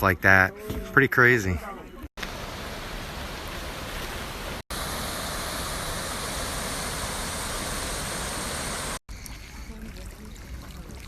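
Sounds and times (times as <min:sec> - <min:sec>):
steady rushing noise: 0:02.2 - 0:09.0.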